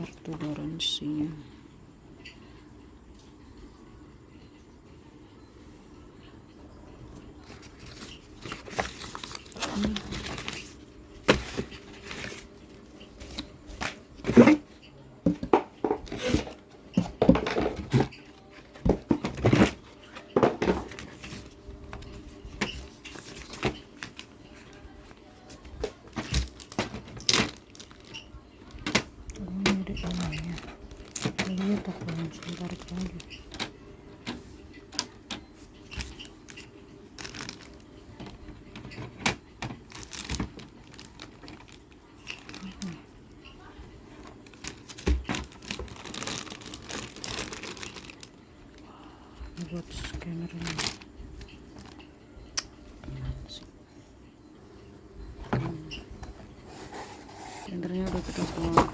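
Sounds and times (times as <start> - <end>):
packaging rustling and crinkling: 7.4 - 14.6, 15.3 - 43.1, 44.1 - 48.9, 49.6 - 52.1, 56.7 - 58.9.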